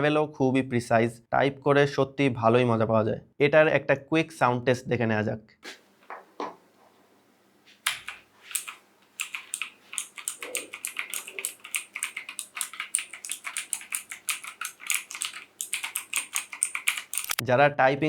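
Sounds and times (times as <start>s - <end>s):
mechanical keyboard typing: 7.8s - 17.4s.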